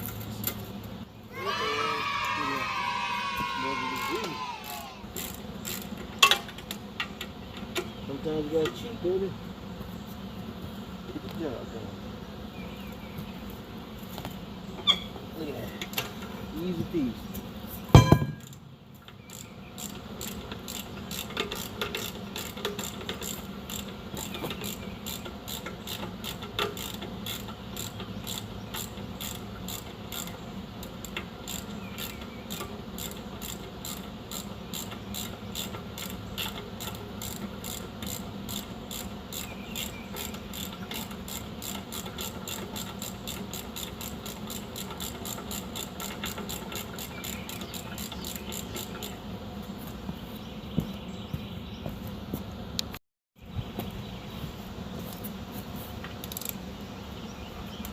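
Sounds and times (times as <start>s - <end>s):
low steady hum: 4.0s - 25.1s.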